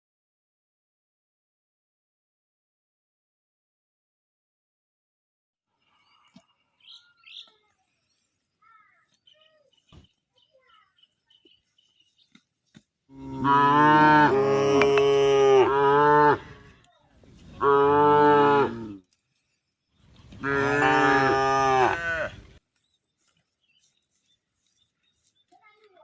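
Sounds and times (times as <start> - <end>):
cow mooing: 13.1 - 16.8, 17.6 - 19.0, 20.4 - 22.5.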